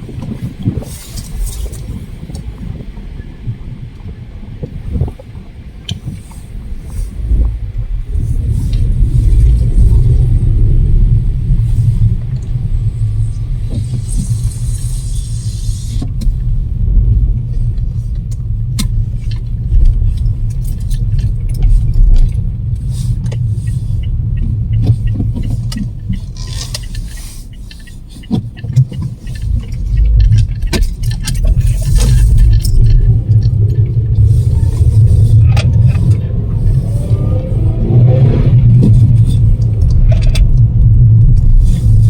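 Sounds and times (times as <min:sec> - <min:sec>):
storm wind buffeting microphone: 0:00.0 - 0:42.0
scattered clicks: 0:17.8 - 0:42.0.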